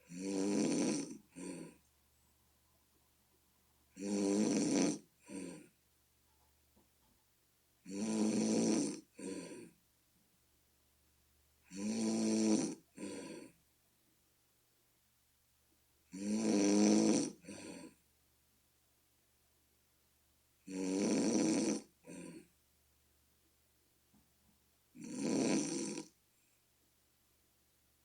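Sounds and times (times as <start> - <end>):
person snoring: 0.0 - 1.8, 3.9 - 5.7, 7.8 - 9.8, 11.7 - 13.6, 16.1 - 18.0, 20.6 - 22.5, 25.0 - 26.2.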